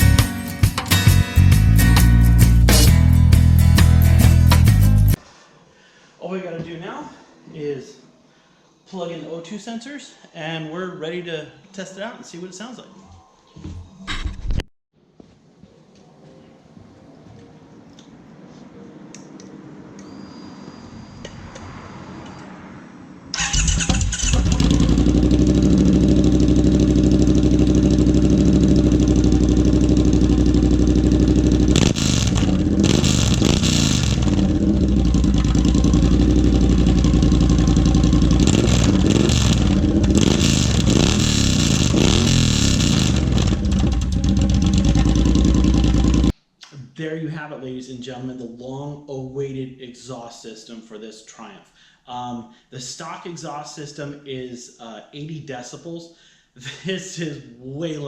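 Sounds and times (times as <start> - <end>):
motorcycle engine idling and revving: 23.4 - 46.3.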